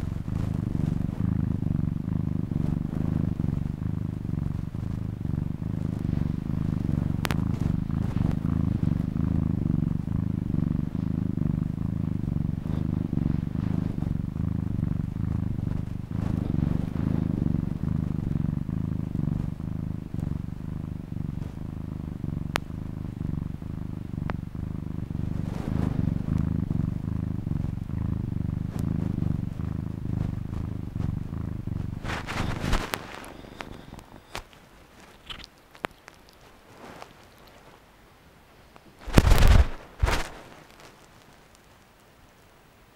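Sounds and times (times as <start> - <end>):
cat purring: 0.0 - 42.9.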